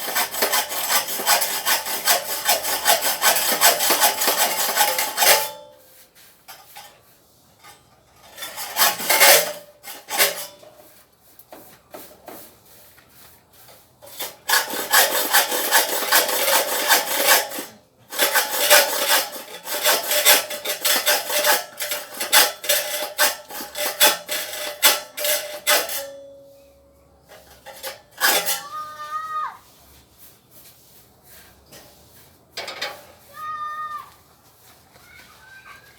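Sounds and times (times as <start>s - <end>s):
hand tool rasping wood: 0.0s - 5.6s, 8.2s - 12.6s, 13.6s - 26.7s, 27.3s - 29.4s.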